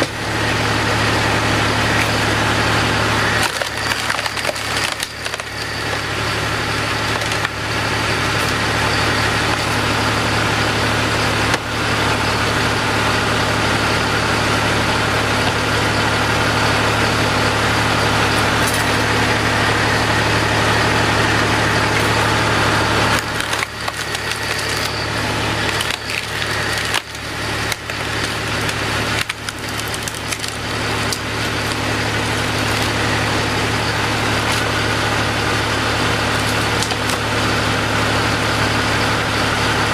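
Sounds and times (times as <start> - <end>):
wood cracking and splintering: 0.0 - 10.6, 18.3 - 38.0
tractor engine running: 0.0 - 39.9.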